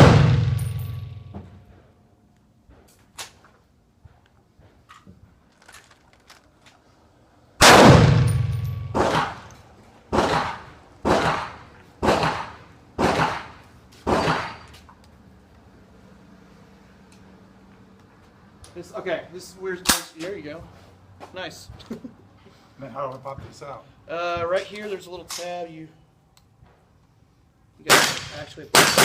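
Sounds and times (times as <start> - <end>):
gunshots: 0.0 - 1.1, 7.6 - 9.5, 10.1 - 14.7, 27.9 - 29.0
gun handling clicks: 4.9 - 6.9.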